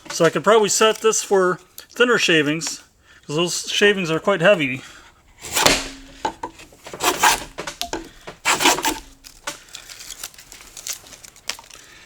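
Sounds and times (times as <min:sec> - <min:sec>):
hand plane scraping along board: 0:05.4 - 0:09.6.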